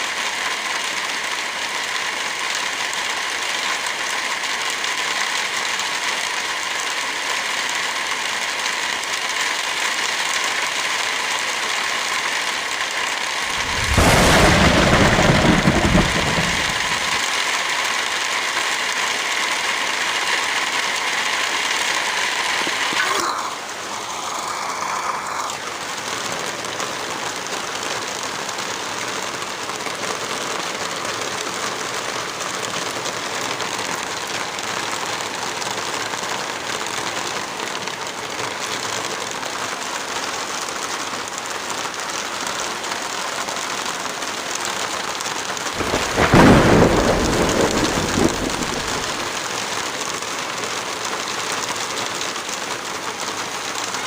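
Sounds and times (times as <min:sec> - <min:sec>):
steady rain falling: 0:00.0 - 0:54.0
thunder rolling: 0:13.5 - 0:17.2, 0:45.8 - 0:49.4.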